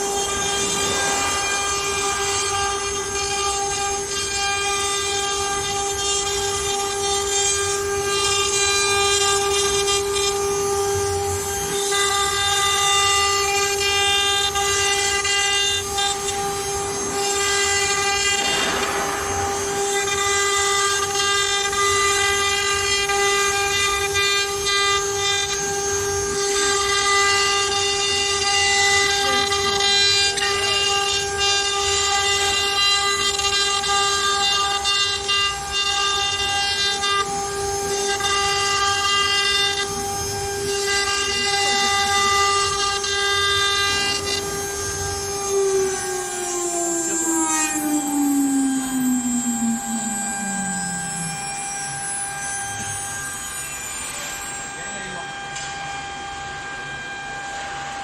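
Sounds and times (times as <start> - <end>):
bit cutting wood: 0.0 - 54.5
router spindle whine: 0.0 - 58.0.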